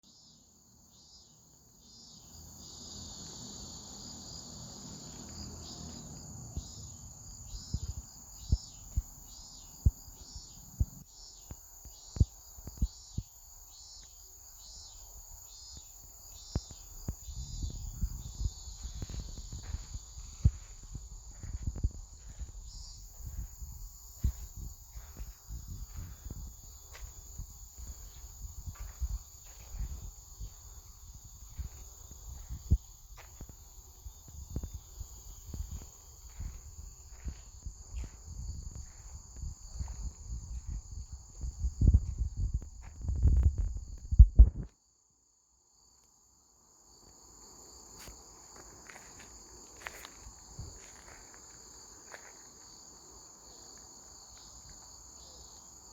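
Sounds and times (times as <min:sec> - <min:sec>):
insects trilling: 0:00.0 - 0:55.9
footsteps walking: 0:18.8 - 0:43.7, 0:48.0 - 0:52.8.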